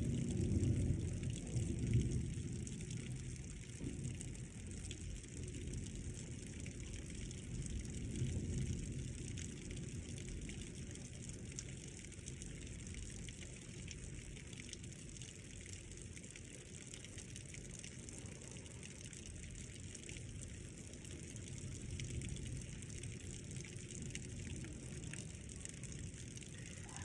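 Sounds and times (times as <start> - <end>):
low thunder rumble: 0.0 - 11.6
rain falling: 0.0 - 27.0.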